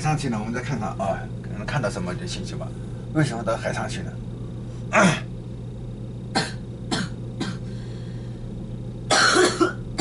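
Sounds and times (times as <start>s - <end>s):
man coughing: 4.9s - 5.3s, 6.3s - 7.7s, 9.1s - 10.0s.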